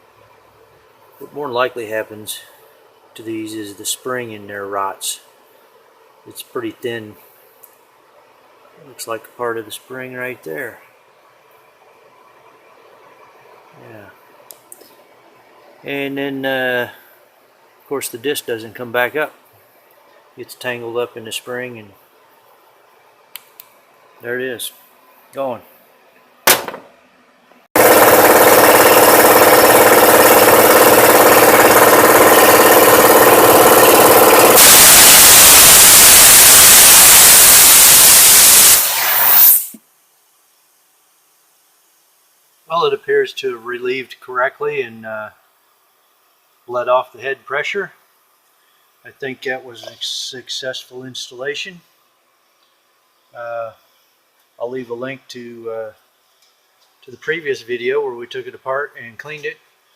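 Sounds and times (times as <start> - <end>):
background hiss: 0.0 - 27.6, 39.6 - 59.9
air compressor running: 27.8 - 39.8
loud air hiss: 34.4 - 39.8.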